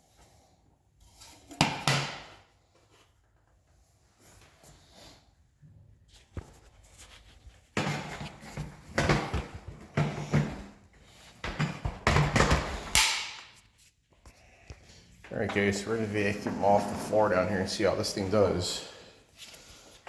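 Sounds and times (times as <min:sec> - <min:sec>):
plastic vacuum knocking and clattering: 0:11.5 - 0:12.8.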